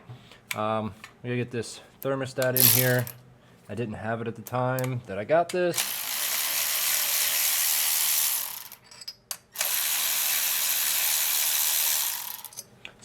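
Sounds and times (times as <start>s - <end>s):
ratchet wrench clicking: 2.4s - 3.2s, 5.8s - 12.6s.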